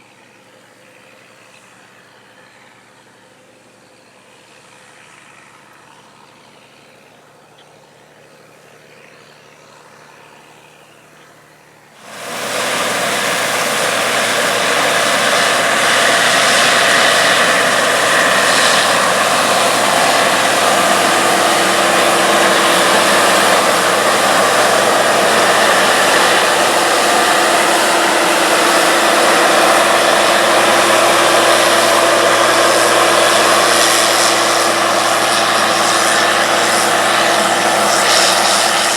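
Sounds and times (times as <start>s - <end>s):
distant diesel machinery humming: 7.9s - 38.9s
harvest machine running: 11.9s - 38.9s.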